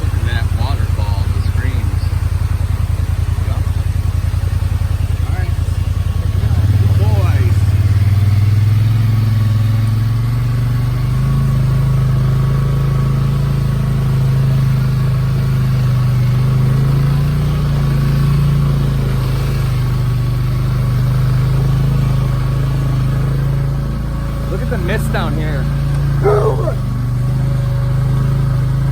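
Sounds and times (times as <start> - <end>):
off-road vehicle engine running: 0.0 - 28.9.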